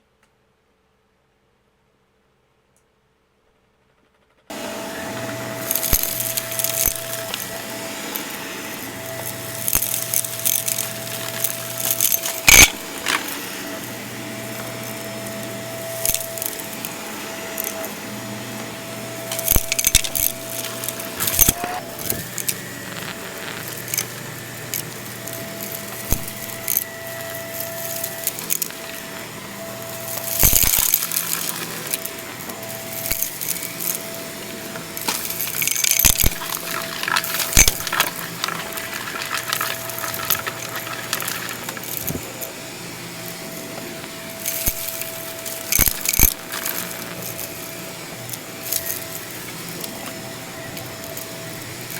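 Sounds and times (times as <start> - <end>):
plastic clicks and rustling: 5.7 - 13.4, 19.3 - 29.2, 29.8 - 34.2, 34.8 - 42.5, 44.4 - 47.7.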